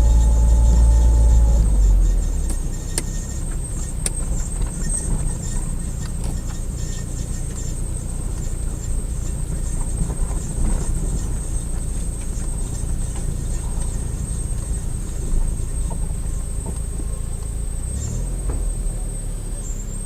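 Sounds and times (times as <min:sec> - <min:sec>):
car road rumble: 0:00.0 - 0:20.0.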